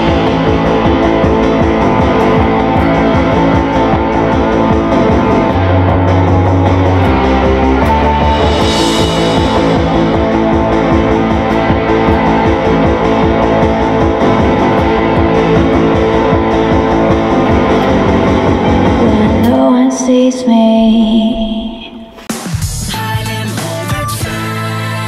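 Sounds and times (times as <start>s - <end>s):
live rock band playing: 0.0s - 19.6s
bass guitar: 0.0s - 25.0s
electric guitar: 0.0s - 25.0s.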